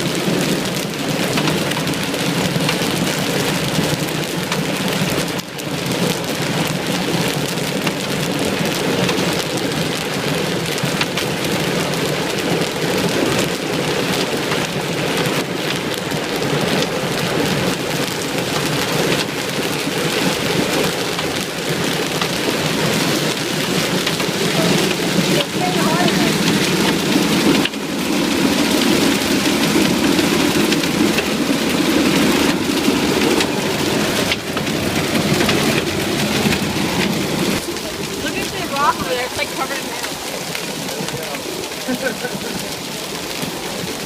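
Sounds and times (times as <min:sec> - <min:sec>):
hail pelting down: 0:00.0 - 0:44.0.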